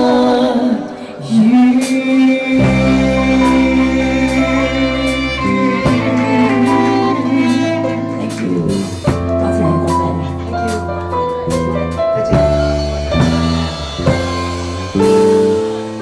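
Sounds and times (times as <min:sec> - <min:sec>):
man and woman singing duet: 0:00.0 - 0:09.0
musical accompaniment: 0:00.0 - 0:16.0.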